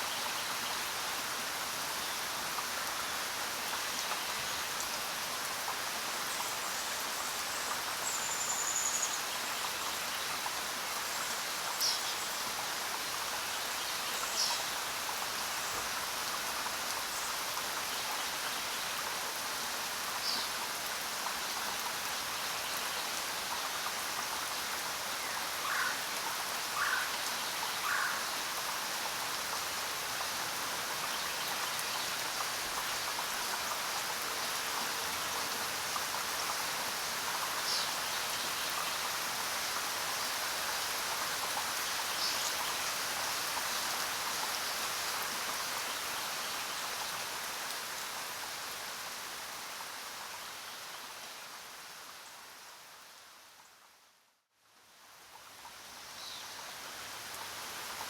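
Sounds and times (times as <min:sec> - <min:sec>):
steady rain falling: 0:00.0 - 0:58.0.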